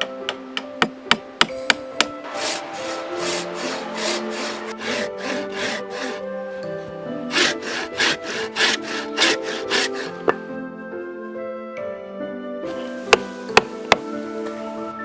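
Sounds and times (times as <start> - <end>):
background music: 0.0 - 15.0
hand saw cutting wood: 2.0 - 6.4, 7.2 - 10.4.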